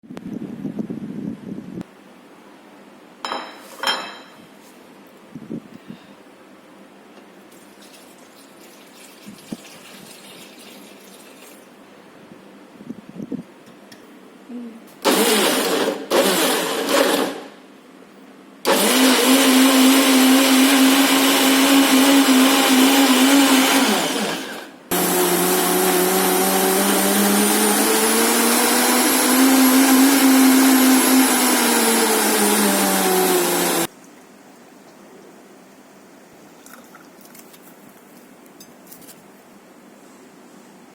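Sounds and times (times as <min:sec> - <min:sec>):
blender motor running: 0:15.0 - 0:17.6, 0:18.6 - 0:33.9.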